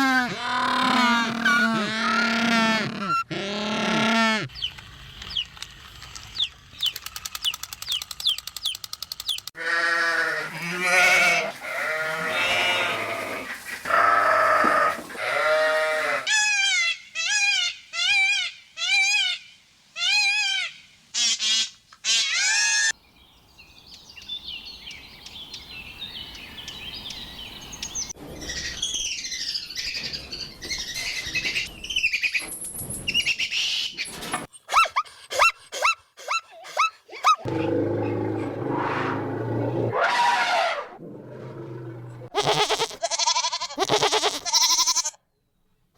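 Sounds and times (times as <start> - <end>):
pitched animal calls: 0.0 - 4.5, 42.2 - 45.2
fast high animal trill: 42.3 - 45.2.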